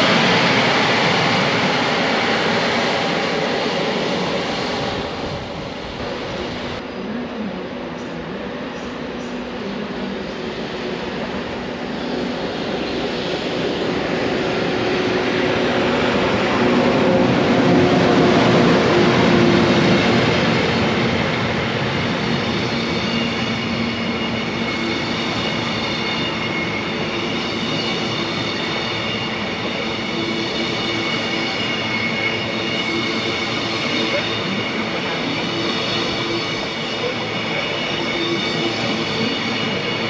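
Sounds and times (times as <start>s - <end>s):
train rumble: 0.0s - 30.3s
train wheel squeal: 12.0s - 40.0s.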